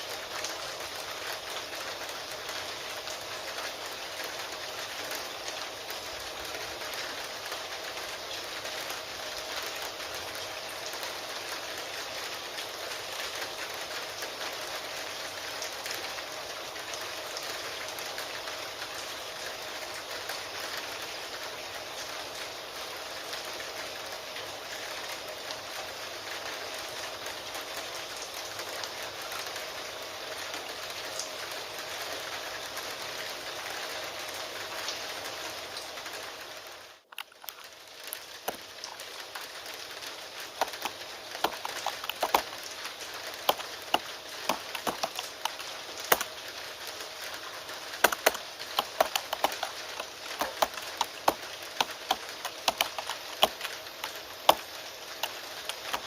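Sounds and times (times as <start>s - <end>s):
rain hiss: 0.0s - 56.0s
keyboard typing clicks: 40.6s - 42.6s, 43.4s - 46.3s, 48.0s - 56.0s.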